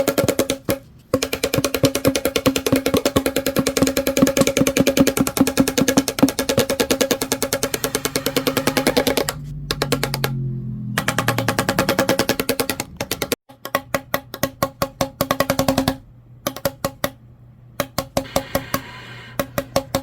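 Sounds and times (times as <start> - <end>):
fan blades rattling cardboard: 0.0 - 10.3
fan motor hum: 0.8 - 13.3, 18.2 - 20.0.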